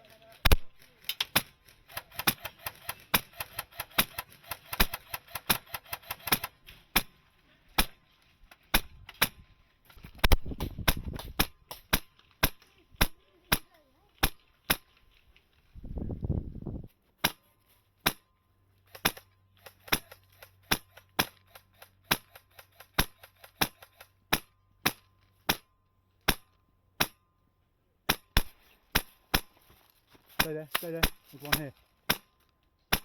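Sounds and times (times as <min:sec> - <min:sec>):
airsoft guns firing: 0:00.1 - 0:08.0, 0:08.6 - 0:09.5, 0:10.2 - 0:15.0, 0:18.9 - 0:25.7, 0:26.3 - 0:27.2, 0:28.1 - 0:29.6, 0:30.3 - 0:33.0.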